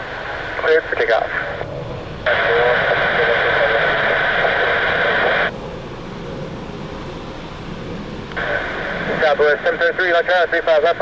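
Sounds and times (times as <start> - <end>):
radio static hiss: 0.0 - 5.5, 8.3 - 11.0
low rumble and hiss: 0.0 - 11.0
faint radio voice: 0.5 - 1.6, 2.3 - 5.5, 8.4 - 11.0.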